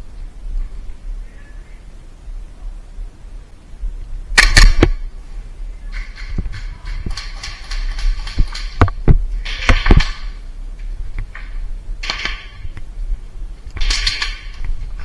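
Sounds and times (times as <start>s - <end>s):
steady low rumble: 0.0s - 15.0s
airsoft gun shots: 4.4s - 5.0s.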